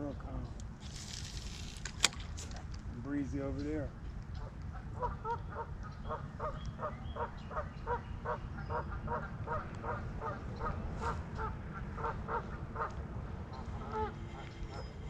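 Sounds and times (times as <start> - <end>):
steady low rumble: 0.0 - 15.0
goose honking: 5.0 - 15.0.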